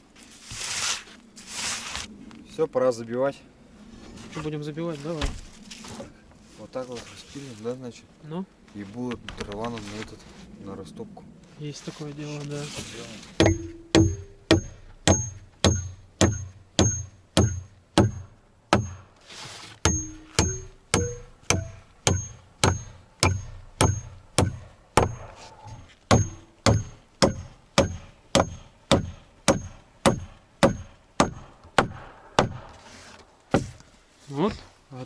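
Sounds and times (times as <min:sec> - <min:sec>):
hammer blows on wood with ring: 0:13.4 - 0:19.1, 0:19.8 - 0:25.4, 0:26.1 - 0:32.8.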